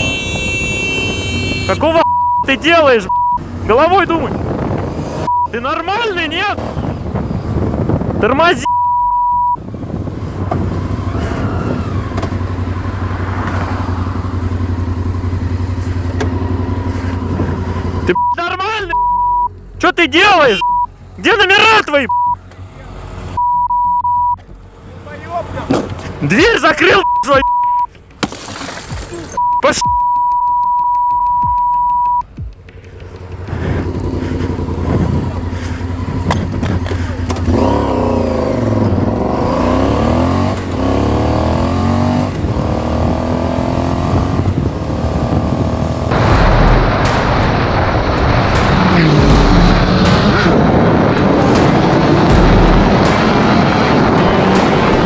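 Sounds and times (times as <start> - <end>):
traffic noise: 0.0 - 55.0
censor bleep tone: 2.0 - 2.5, 3.1 - 3.4, 5.3 - 5.5, 8.6 - 9.6, 18.1 - 19.5, 20.6 - 20.9, 22.1 - 22.4, 23.4 - 24.4, 27.0 - 27.9, 29.4 - 32.2
motorcycle engine: 9.6 - 18.1, 32.2 - 55.0
motorcycle engine idling: 32.3 - 37.4.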